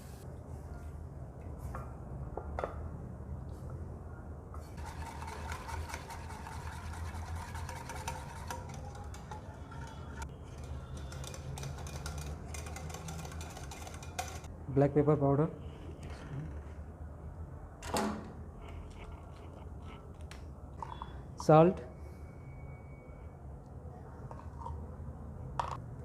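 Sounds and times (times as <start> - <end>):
utensil stirring sauce in a pan: 4.8 - 14.5.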